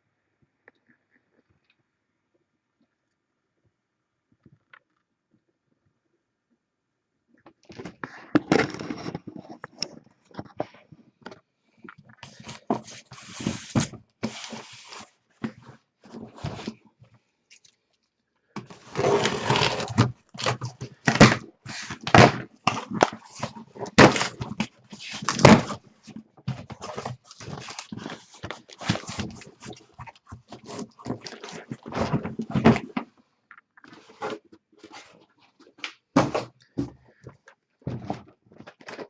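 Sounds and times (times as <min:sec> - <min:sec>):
cardboard boxes being handled: 0:18.6 - 0:33.0.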